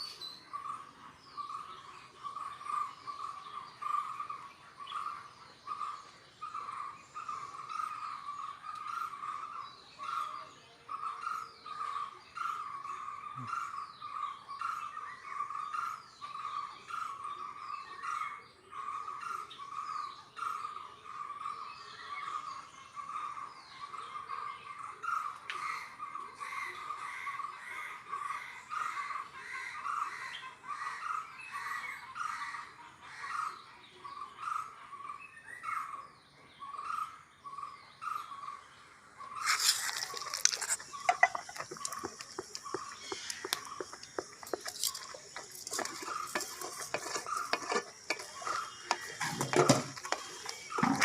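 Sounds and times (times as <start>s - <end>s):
pan sizzling: 39.4s - 51.0s.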